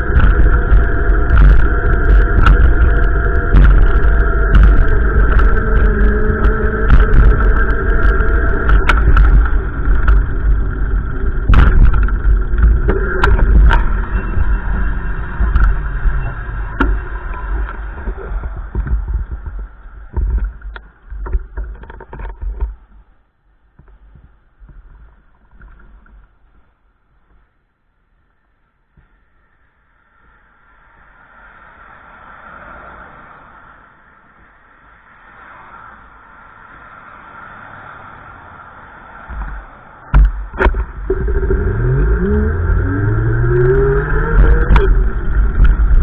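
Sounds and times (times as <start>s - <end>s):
knocks and clicks: 0.0s - 14.5s, 39.3s - 46.0s
wind buffeting microphone: 0.0s - 23.0s, 39.2s - 46.0s.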